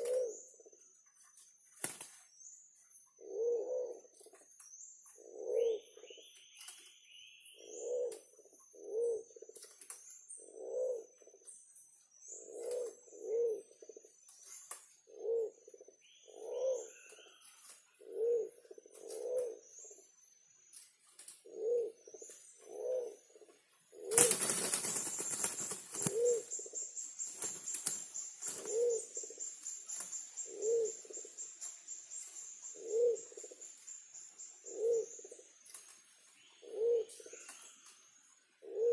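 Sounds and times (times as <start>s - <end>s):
pigeon cooing: 0.0s - 0.5s, 3.2s - 4.1s, 5.2s - 6.2s, 7.6s - 8.2s, 8.8s - 9.6s, 10.4s - 11.1s, 12.4s - 14.1s, 15.1s - 17.0s, 18.0s - 19.6s, 21.5s - 22.0s, 22.6s - 23.2s, 24.0s - 24.6s, 25.9s - 26.8s, 28.5s - 29.4s, 30.4s - 31.3s, 32.8s - 33.6s, 34.6s - 35.4s, 36.6s - 37.4s, 38.6s - 38.9s
higher bird chirps: 0.0s - 38.9s.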